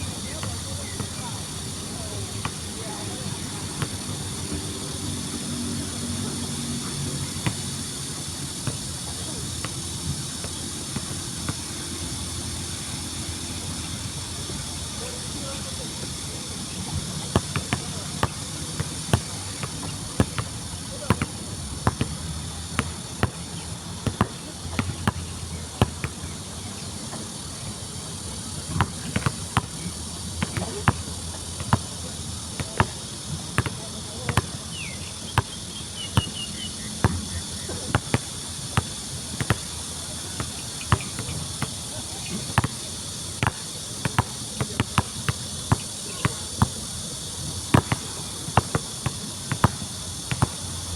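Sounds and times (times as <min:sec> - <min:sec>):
insects chirping: 0:00.0 - 0:50.9
basketball bouncing on court: 0:00.1 - 0:04.4, 0:07.3 - 0:07.6, 0:08.6 - 0:09.8, 0:16.9 - 0:26.2, 0:28.8 - 0:29.8, 0:30.4 - 0:31.9, 0:32.6 - 0:34.6, 0:37.0 - 0:46.8, 0:47.7 - 0:50.7.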